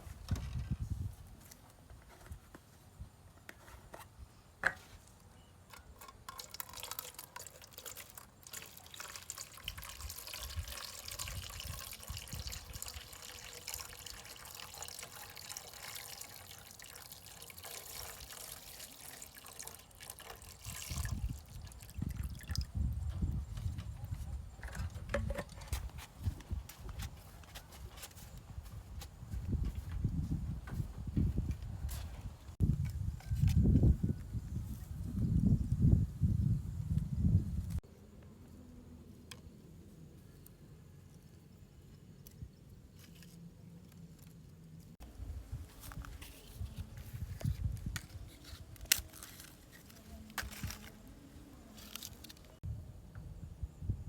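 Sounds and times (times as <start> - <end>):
water pouring: 6.0 - 22.8.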